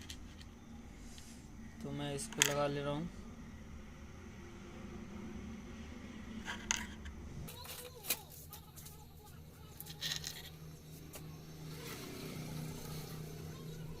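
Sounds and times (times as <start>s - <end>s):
small clicks and scrapes: 0.0s - 0.5s, 6.4s - 9.0s
low steady hum: 0.0s - 14.0s.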